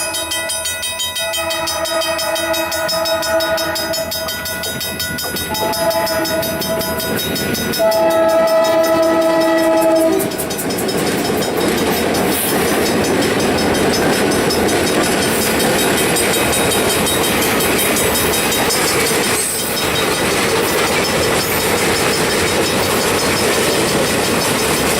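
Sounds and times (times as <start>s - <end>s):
train rushing and rattling: 0.0s - 24.9s
locomotive air horn: 1.2s - 4.3s, 5.5s - 7.0s, 7.8s - 10.4s.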